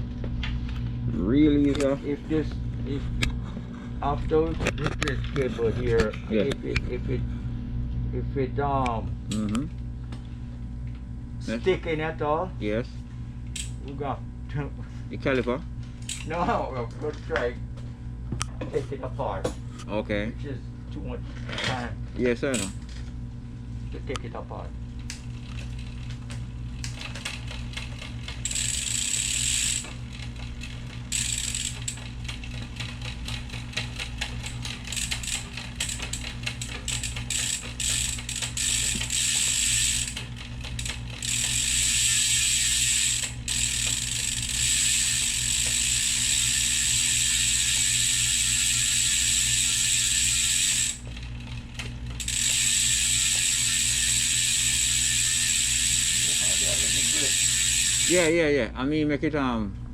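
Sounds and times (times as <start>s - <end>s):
bicycle freewheel ratchet ticking: 22.5s - 22.8s, 25.0s - 58.4s.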